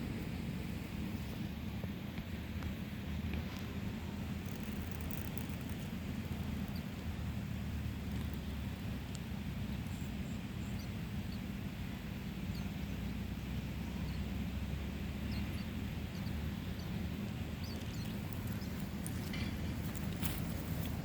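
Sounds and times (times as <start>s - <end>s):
steady low rumble: 0.0s - 21.0s
nestling birds cheeping: 4.4s - 21.0s.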